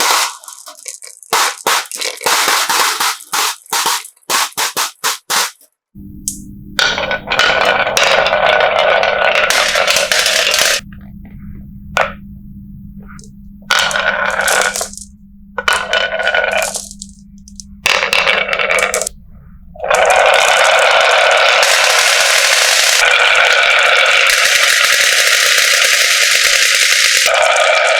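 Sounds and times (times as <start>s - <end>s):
marbles clattering down wooden run: 0.0s - 4.6s, 6.9s - 10.8s, 13.7s - 17.1s, 17.9s - 19.1s, 19.9s - 27.9s.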